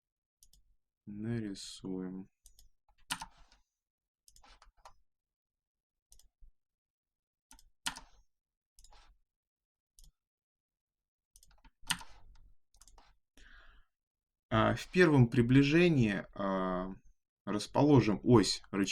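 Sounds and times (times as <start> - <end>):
mouse and keyboard clicks: 2.5 - 3.6, 4.3 - 5.0, 8.8 - 9.1, 11.4 - 13.1.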